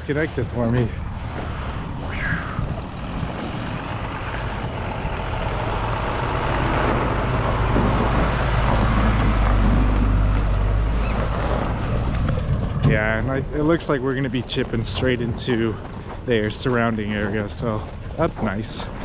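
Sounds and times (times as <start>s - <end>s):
vehicle engine droning: 0.0s - 19.0s.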